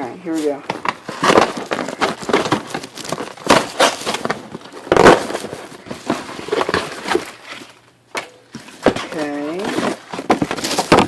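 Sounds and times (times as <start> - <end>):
cardboard box tearing: 1.0 - 7.7, 8.9 - 11.0.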